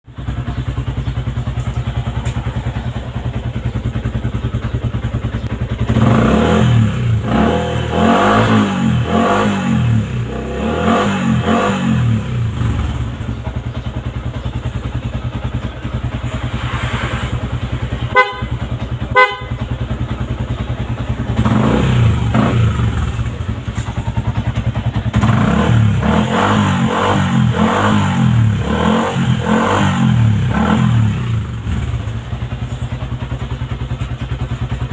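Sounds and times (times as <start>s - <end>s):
motorcycle engine idling and revving: 0.0s - 34.9s
horn beeps: 17.9s - 19.8s.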